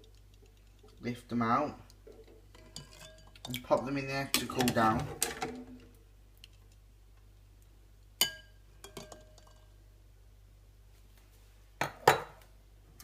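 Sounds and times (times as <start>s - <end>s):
kitchenware clinking: 2.1s - 5.9s, 8.2s - 9.7s, 11.8s - 12.4s.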